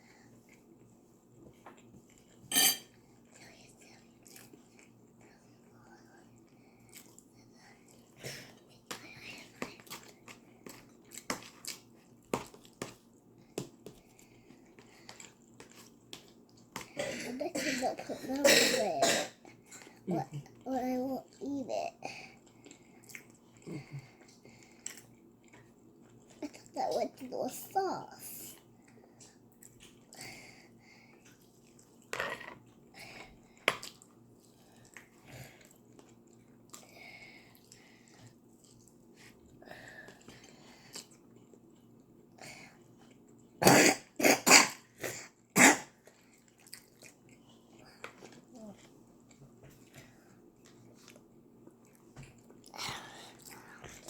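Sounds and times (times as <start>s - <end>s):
person chewing food: 1.5s - 2.4s, 4.0s - 17.0s, 22.2s - 26.8s, 28.6s - 43.6s, 45.3s - 54.0s
chewing and biting food: 46.0s - 54.0s.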